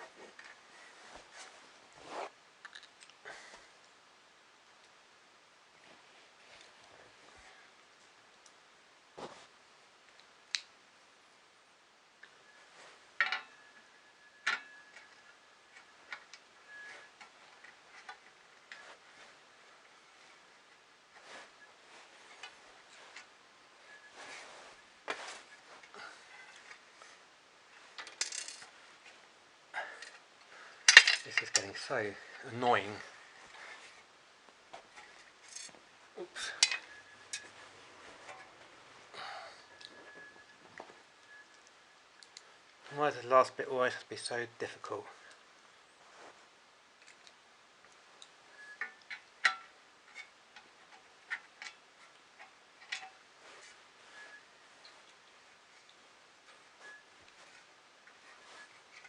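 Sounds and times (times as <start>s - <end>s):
metal parts and tools clinking: 13.2s - 18.9s, 27.9s - 28.7s, 30.8s - 31.9s, 35.0s - 35.8s, 36.4s - 37.6s
small metal parts clinking: 28.0s - 28.7s, 30.8s - 31.9s, 35.4s - 35.8s, 36.5s - 37.5s.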